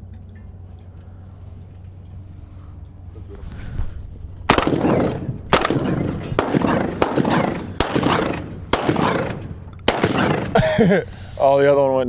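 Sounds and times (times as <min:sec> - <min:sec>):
shotgun fire with echo: 0:04.5 - 0:11.1.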